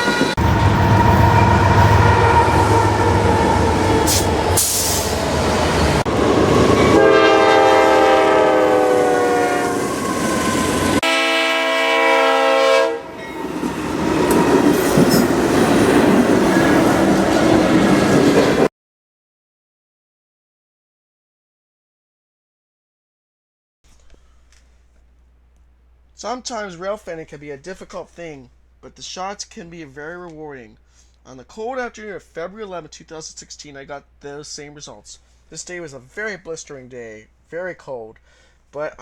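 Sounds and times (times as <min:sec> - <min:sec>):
locomotive horn blowing: 0:00.0 - 0:05.0, 0:06.1 - 0:15.1
train wheel noise: 0:00.0 - 0:07.0, 0:13.3 - 0:18.7
train engine rumble: 0:00.0 - 0:11.0, 0:13.1 - 0:18.7.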